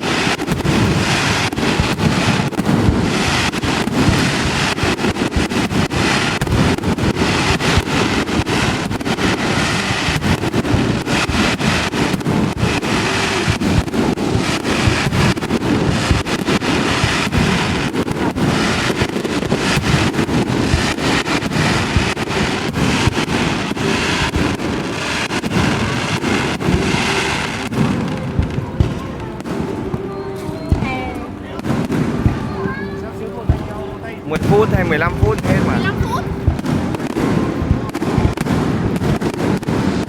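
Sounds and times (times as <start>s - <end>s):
fireworks bangs and crackles: 0.0s - 40.0s.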